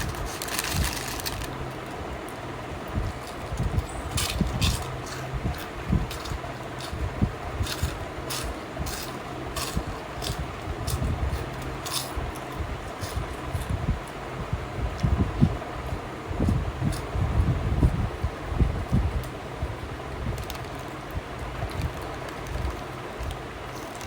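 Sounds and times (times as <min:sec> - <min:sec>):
crisp eating crunches: 0:00.0 - 0:02.4, 0:03.0 - 0:13.8, 0:20.3 - 0:24.0
steady low hum: 0:00.0 - 0:24.0.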